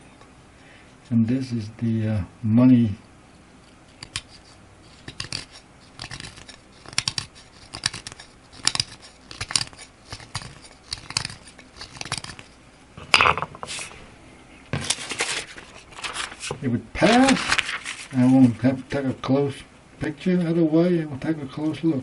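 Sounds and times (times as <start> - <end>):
knife scraping antler: 3.6 - 12.6.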